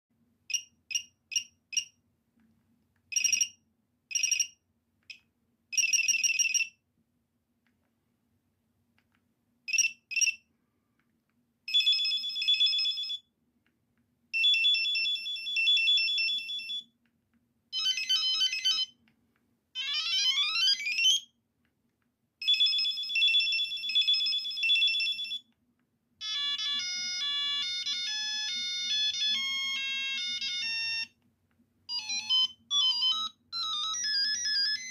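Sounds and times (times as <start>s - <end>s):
phone ringtones: 17.8s - 18.9s, 19.8s - 21.2s, 26.2s - 31.1s, 31.9s - 34.9s
multi-note ringtone melody: 19.8s - 21.2s, 26.2s - 31.1s, 31.9s - 34.9s
trilling phone rings: 19.8s - 21.2s, 26.2s - 31.1s, 31.9s - 34.9s.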